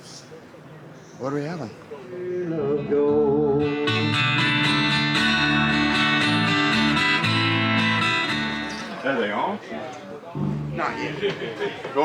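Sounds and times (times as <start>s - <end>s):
guitar strumming chords: 2.8s - 9.0s, 10.4s - 11.3s.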